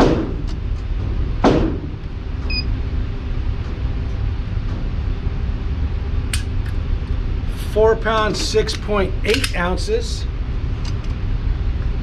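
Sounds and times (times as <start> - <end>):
low rumble: 0.0 - 9.2.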